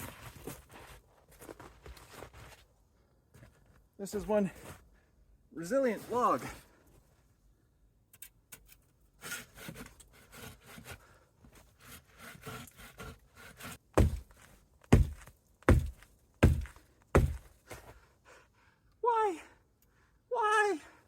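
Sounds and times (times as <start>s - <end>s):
handsaw rasping through log: 9.2s - 11.0s, 11.7s - 14.3s, 14.9s - 17.4s
heavy thuds against wood: 14.0s - 17.5s.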